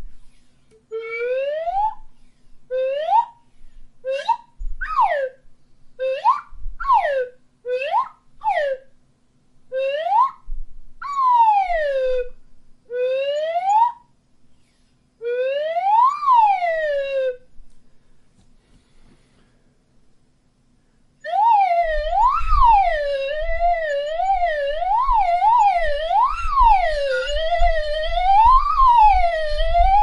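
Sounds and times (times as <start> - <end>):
slide whistle swoops: 4.1 - 5.4, 6.0 - 8.8.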